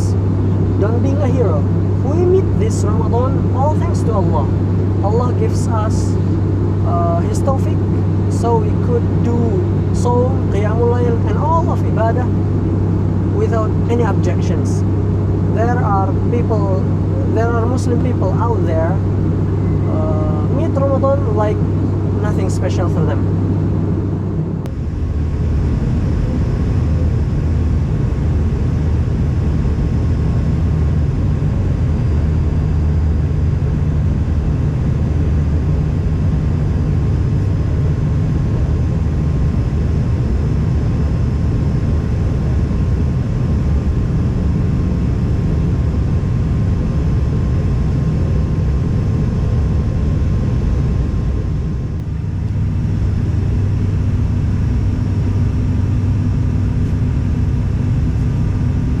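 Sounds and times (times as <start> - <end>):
faint steady whines: 0.0 - 59.0
propeller and engine drone: 0.0 - 59.0.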